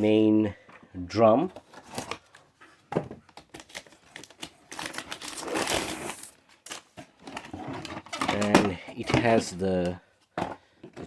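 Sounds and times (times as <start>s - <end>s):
packaging rustling: 1.5s - 2.5s, 3.2s - 9.6s.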